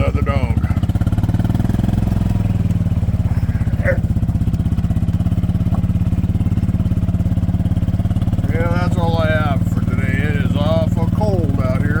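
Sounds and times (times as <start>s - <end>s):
small engine running: 0.0s - 12.0s.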